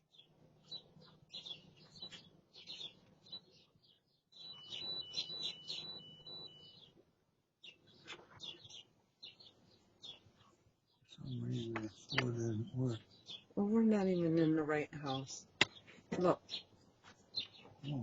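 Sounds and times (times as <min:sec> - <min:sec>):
small birds chirping: 0:00.0 - 0:18.0
keypad lock beeps: 0:04.4 - 0:06.8.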